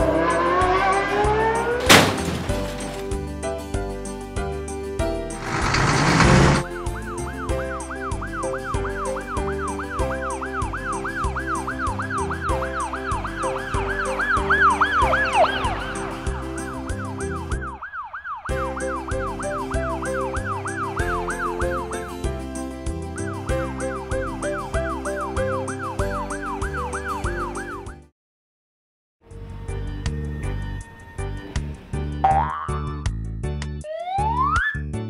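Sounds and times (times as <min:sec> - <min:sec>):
upbeat background music: 0:00.0 - 0:01.8, 0:02.6 - 0:17.8, 0:18.5 - 0:28.1, 0:29.6 - 0:35.0
noisy whoosh: 0:05.4 - 0:06.7
cartoon siren wail: 0:07.0 - 0:15.7, 0:16.8 - 0:21.7, 0:23.9 - 0:27.9, 0:33.8 - 0:34.9.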